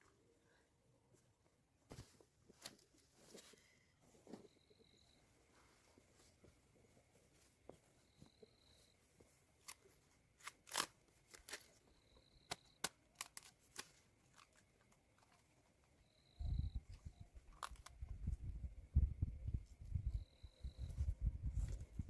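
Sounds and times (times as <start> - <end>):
sharp snaps and crackles: 9.6 - 15.9, 17.4 - 18.2.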